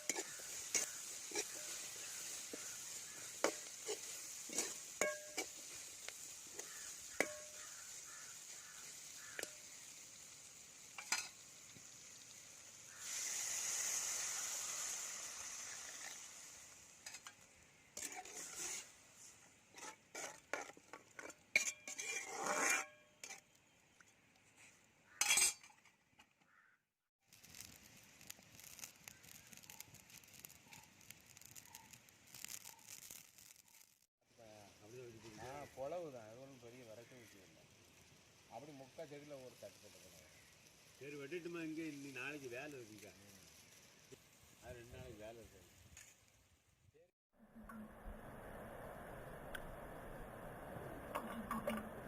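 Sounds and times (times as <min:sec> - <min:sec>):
metal spoon scraping a pan: 0:00.0 - 0:10.0, 0:10.9 - 0:11.5, 0:17.0 - 0:23.6, 0:25.1 - 0:25.9
food sizzling in a hot pan: 0:00.0 - 0:23.5, 0:27.2 - 0:46.7.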